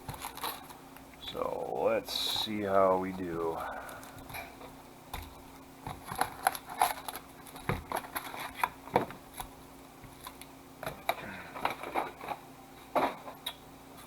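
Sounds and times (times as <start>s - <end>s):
card packaging crinkling: 0.0s - 0.8s, 5.2s - 9.4s.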